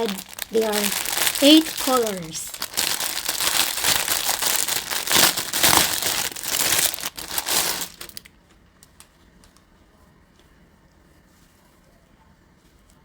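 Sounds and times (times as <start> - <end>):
packaging crinkling and rustling: 0.0 - 9.6.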